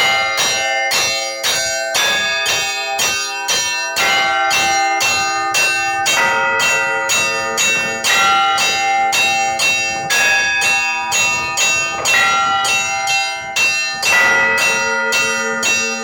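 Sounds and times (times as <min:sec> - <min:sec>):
church bells ringing: 0:00.0 - 0:16.0.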